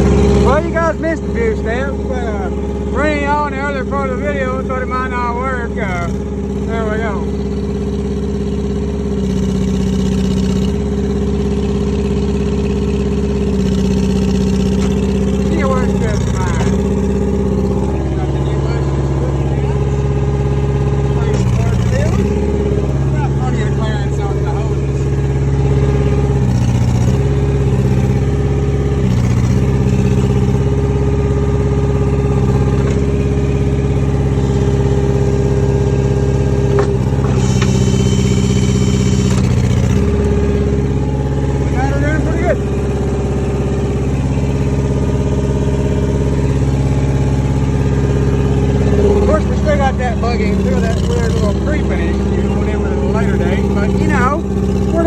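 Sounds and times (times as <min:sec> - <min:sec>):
skid steer engine running: 0:00.0 - 0:55.0
high-pitched hydraulic whine: 0:37.2 - 0:40.0.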